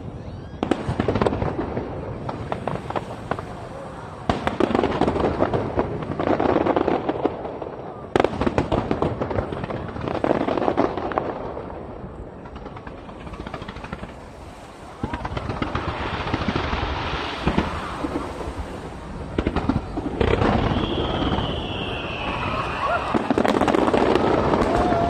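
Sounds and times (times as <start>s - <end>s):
fireworks bangs: 0.0s - 25.0s
fireworks crackling: 0.0s - 25.0s
high whistling tone: 20.6s - 23.1s.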